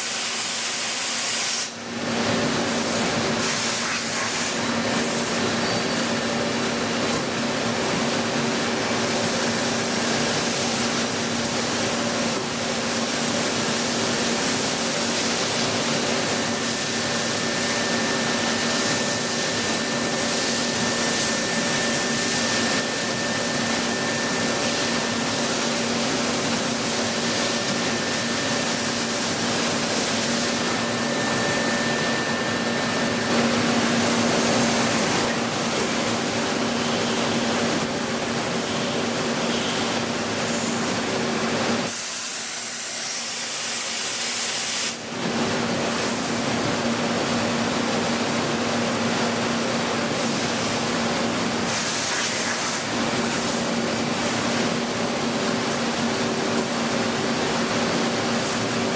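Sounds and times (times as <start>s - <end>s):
thin high whine: 13.3s - 38.0s.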